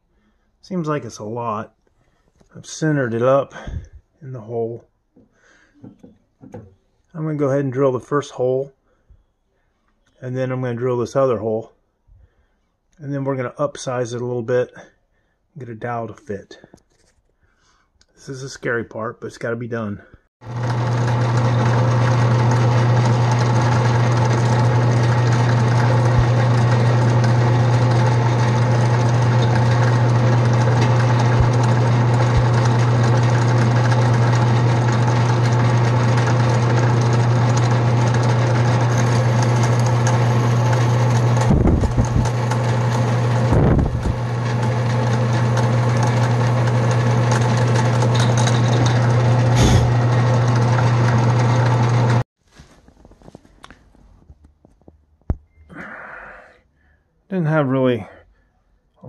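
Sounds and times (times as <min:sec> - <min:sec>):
electric drill boring into wood: 0:20.4 - 0:52.2.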